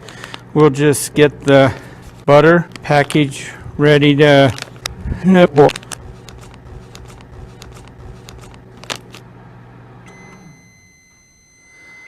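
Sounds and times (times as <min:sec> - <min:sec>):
microwave oven humming: 0:00.0 - 0:12.0
long beep: 0:10.1 - 0:12.0.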